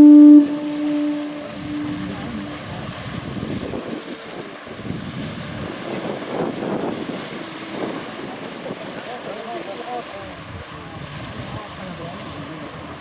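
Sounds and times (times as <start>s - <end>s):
horn note: 0.0s - 2.8s
wind buffeting microphone: 0.0s - 13.0s.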